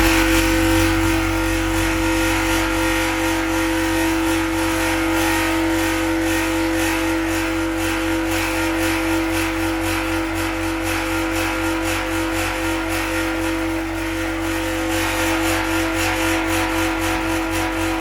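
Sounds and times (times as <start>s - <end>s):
gong humming drone: 0.0s - 18.0s.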